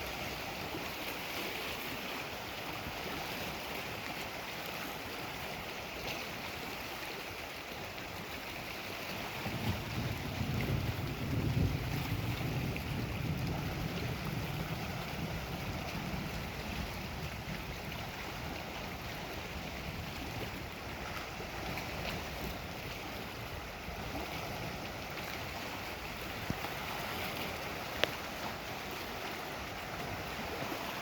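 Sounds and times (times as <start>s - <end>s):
lake waves: 0.0s - 31.0s
wind: 0.0s - 31.0s.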